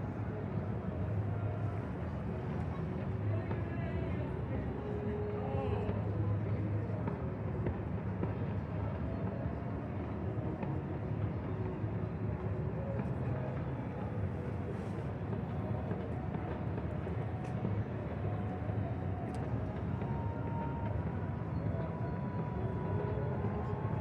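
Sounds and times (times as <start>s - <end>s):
faint murmur of voices: 0.0s - 24.0s.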